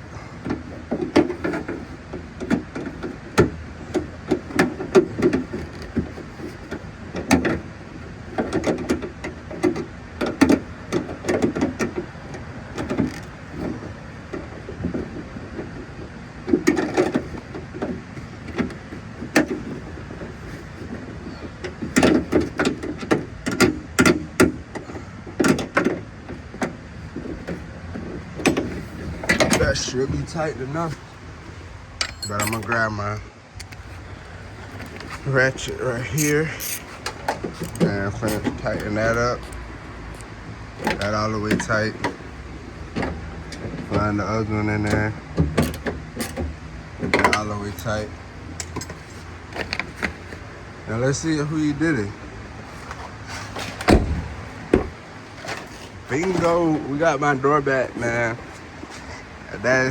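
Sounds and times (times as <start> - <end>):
dull thuds against door: 53.8 - 55.0.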